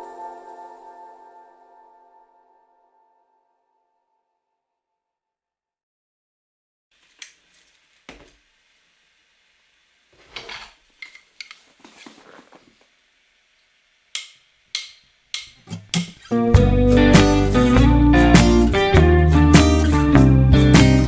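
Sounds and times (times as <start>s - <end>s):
rustling scrape: 7.0s - 8.4s, 10.1s - 13.0s.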